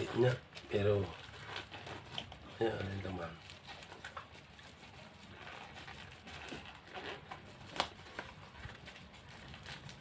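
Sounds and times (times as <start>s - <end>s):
packaging rustling and crinkling: 0.0s - 10.0s.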